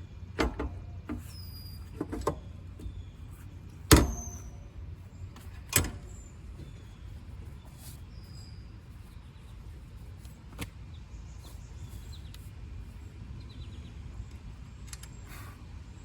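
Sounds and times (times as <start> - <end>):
faint bird chirps: 6.0 - 9.6.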